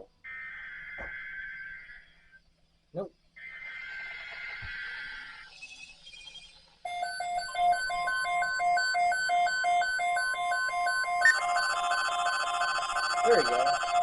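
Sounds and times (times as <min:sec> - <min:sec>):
steady alarm tone: 0:00.0 - 0:02.4, 0:03.4 - 0:14.0
rapid electronic beeping: 0:03.4 - 0:14.0.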